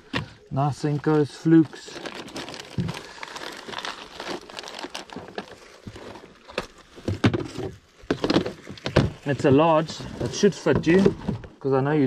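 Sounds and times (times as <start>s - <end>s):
plastic packaging crinkling: 1.0s - 7.2s.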